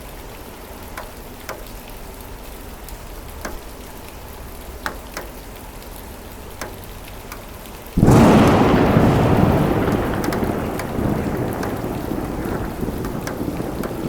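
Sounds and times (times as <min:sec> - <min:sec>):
steady rain: 0:00.0 - 0:14.0
drips tapping: 0:03.4 - 0:05.6, 0:06.4 - 0:07.6, 0:09.9 - 0:14.0
thunderclap rolling: 0:08.0 - 0:14.0.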